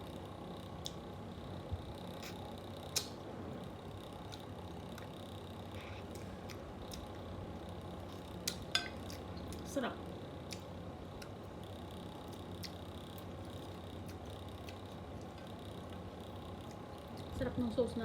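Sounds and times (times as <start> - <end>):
electric fan whirring: 0.0 - 18.0
person chewing: 12.2 - 15.6.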